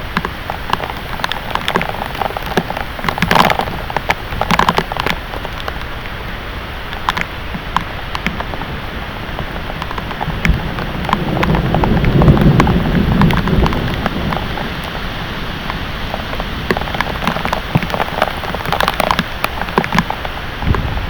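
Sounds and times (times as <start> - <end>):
heavy rain falling: 0.0 - 21.0
raindrops splatting: 0.0 - 21.0
low thunder rumble: 8.2 - 18.8, 20.5 - 21.0.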